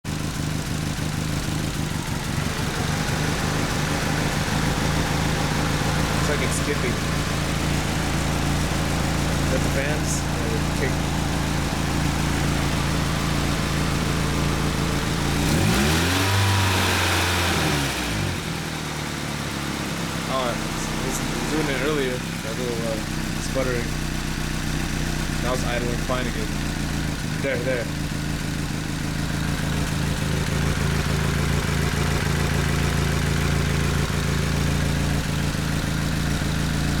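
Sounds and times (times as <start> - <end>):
engine rough idle revving: 0.0 - 37.0.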